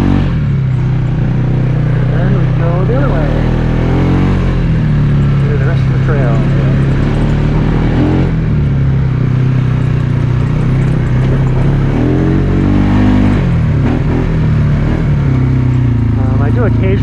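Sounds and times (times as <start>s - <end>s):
quad bike engine running: 0.0s - 17.0s.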